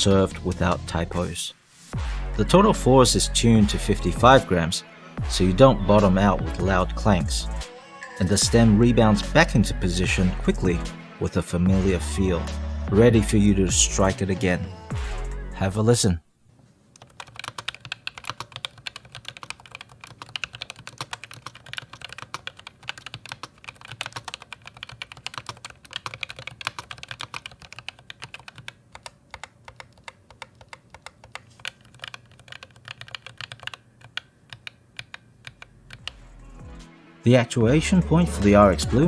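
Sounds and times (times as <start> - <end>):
typing on a keyboard: 17.0 - 36.2.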